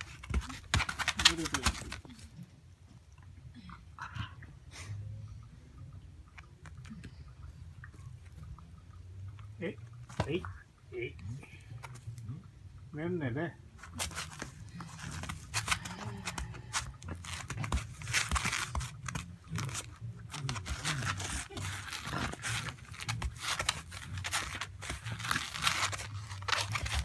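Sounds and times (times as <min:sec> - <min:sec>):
rustling and scraping on fabric: 0:00.0 - 0:02.3, 0:13.8 - 0:27.0.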